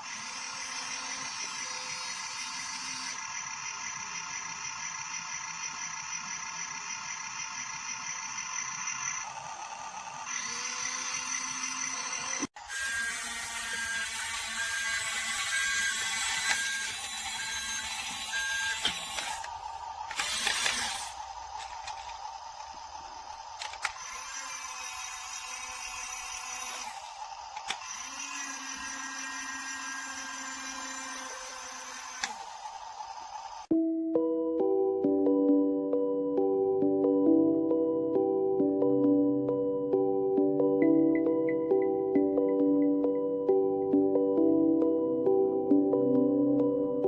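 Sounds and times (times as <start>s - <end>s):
toy motors and gears whirring: 0.0s - 33.7s.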